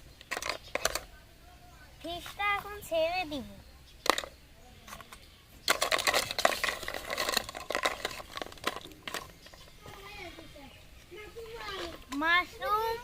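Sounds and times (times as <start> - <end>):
pieces rattling in toy pan: 5.7 - 9.4.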